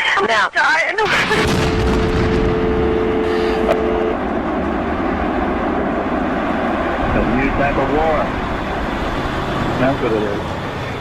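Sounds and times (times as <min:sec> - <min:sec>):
loud rushing roar: 0:01.1 - 0:11.0
held two-note tone: 0:02.3 - 0:04.2.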